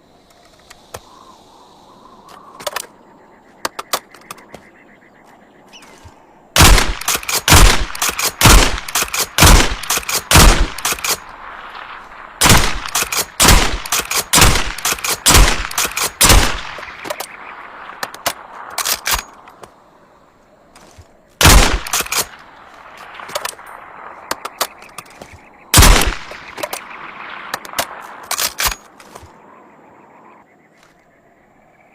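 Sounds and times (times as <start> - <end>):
suppressed rifle shots: 6.6 - 19.4, 21.4 - 22.4, 23.0 - 29.3
rifle action clacking: 6.7 - 11.3, 21.4 - 22.4.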